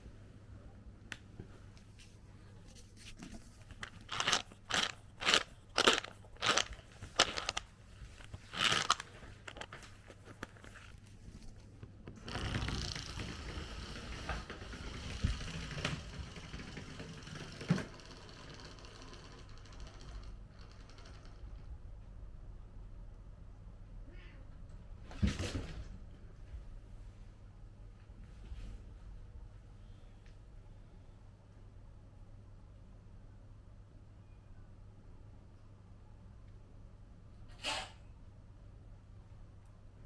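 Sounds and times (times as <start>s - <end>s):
rustling: 1.6s - 13.0s
crunching scrapes: 2.7s - 11.5s.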